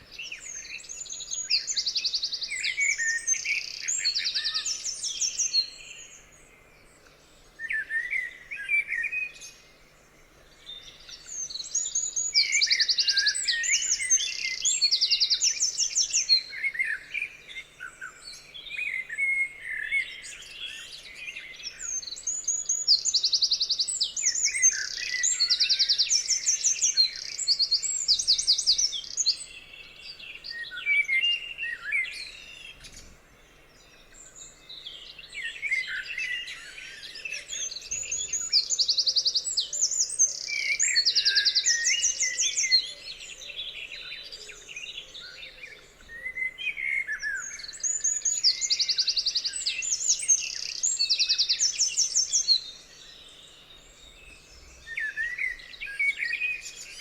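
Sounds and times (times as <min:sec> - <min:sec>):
songbirds singing: 0:00.0 - 0:57.0.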